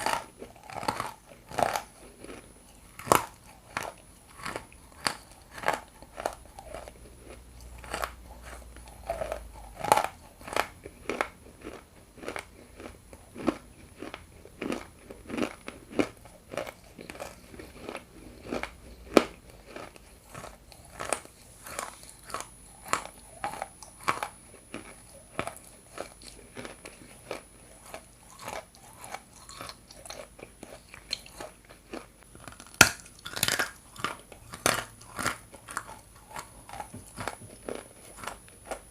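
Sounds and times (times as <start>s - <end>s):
soft chewing: 0.0s - 38.9s
crunching bites of hard clay: 31.9s - 38.4s.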